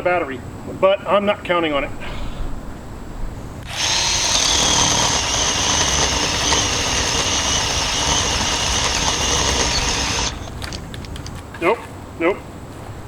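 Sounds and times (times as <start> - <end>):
cordless chainsaw electric whine: 3.6 - 11.3.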